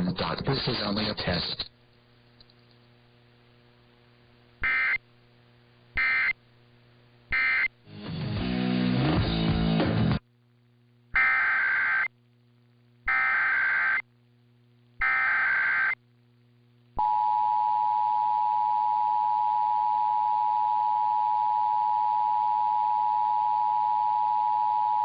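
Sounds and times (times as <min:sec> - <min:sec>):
digital data tone bursts: 0:04.6 - 0:05.0, 0:06.0 - 0:06.4, 0:07.3 - 0:07.7, 0:11.2 - 0:12.1, 0:13.1 - 0:14.0, 0:15.0 - 0:16.0.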